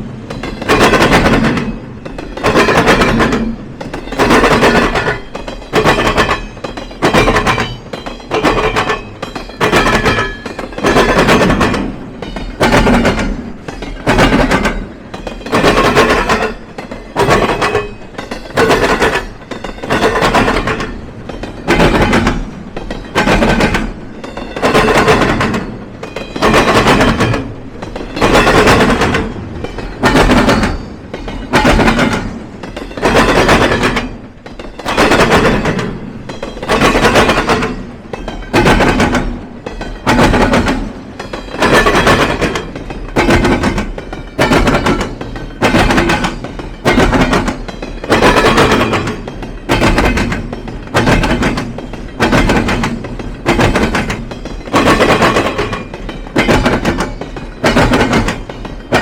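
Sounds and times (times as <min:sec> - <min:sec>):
train wheels banging over crossing: 0:00.0 - 0:59.0.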